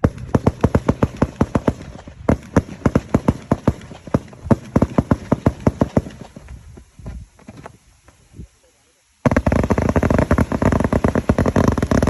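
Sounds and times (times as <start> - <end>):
fireworks bangs: 0.0 - 6.5, 9.2 - 12.0.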